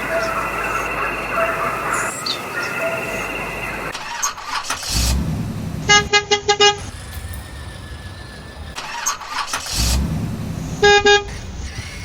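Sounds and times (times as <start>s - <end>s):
rumbling engine: 0.0s - 12.0s
vehicle horn short toots: 5.9s - 6.9s.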